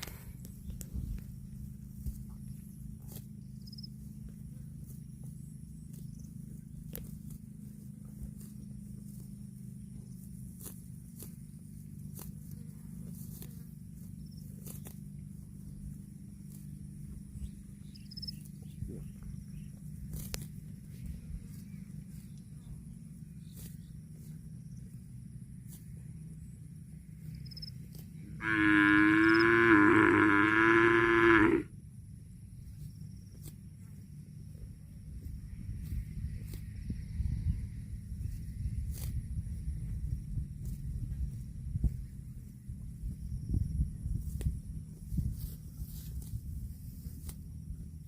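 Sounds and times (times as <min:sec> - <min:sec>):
cow tearing grass: 0:00.0 - 0:31.6, 0:32.4 - 0:48.0
insect buzz: 0:00.0 - 0:48.0
low hum: 0:00.0 - 0:48.0
cow mooing: 0:28.3 - 0:31.7.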